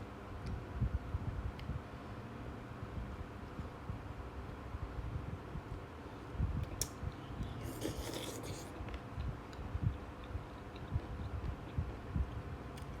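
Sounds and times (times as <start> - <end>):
person chewing food: 7.4 - 11.8.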